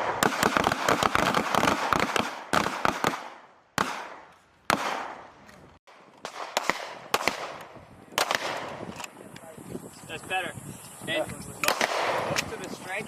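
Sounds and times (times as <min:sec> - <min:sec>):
pistol shots with echo: 0:00.0 - 0:05.3, 0:06.2 - 0:08.8, 0:11.6 - 0:12.5.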